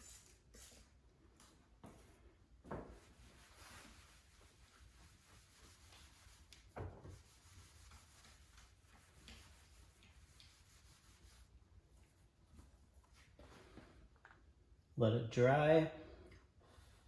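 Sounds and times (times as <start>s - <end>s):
towel rubbing car paint: 3.0s - 12.2s.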